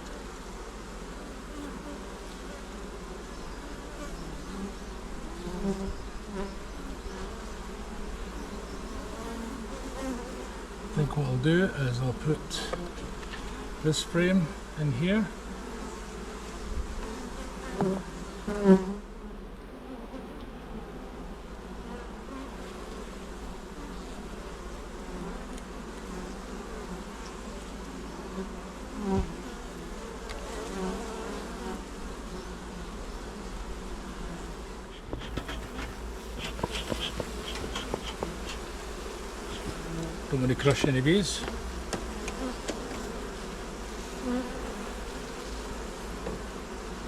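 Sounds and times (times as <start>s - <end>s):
bees buzzing: 0.0s - 47.0s
wooden hive frames knocking: 29.0s - 29.5s, 34.9s - 43.2s, 46.2s - 46.5s.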